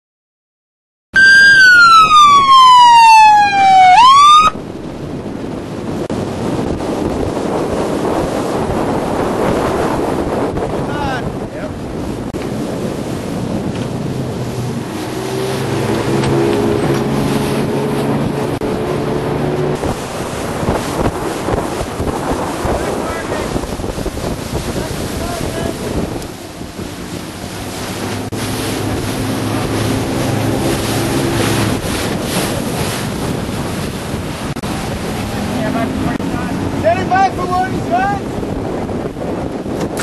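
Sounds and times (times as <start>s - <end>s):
siren wailing: 1.2s - 4.8s
boat rushing over water: 1.2s - 40.0s
wind on microphone: 1.2s - 40.0s
low engine hum: 12.2s - 40.0s.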